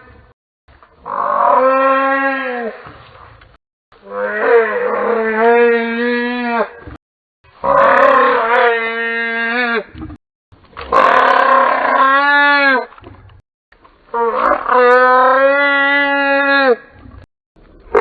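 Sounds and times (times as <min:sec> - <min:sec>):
dinosaur roar: 0:10.9 - 0:12.9.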